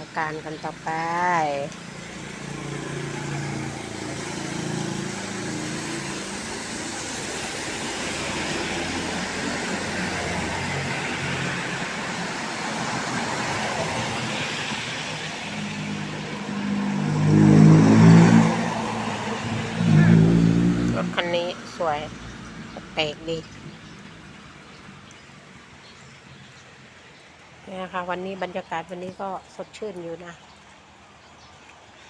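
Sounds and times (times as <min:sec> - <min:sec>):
vehicle engine passing close: 0:01.2 - 0:21.4.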